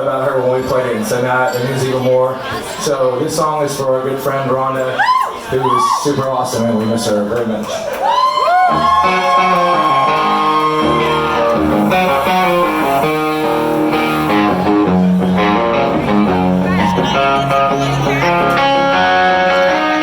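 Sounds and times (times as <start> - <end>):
electric guitar playing chords: 8.7 - 20.0
high held guitar note: 8.7 - 20.0.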